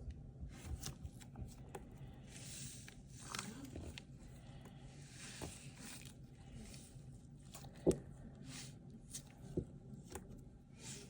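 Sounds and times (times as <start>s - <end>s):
foam toys rustling and squeezing: 2.2s - 9.6s.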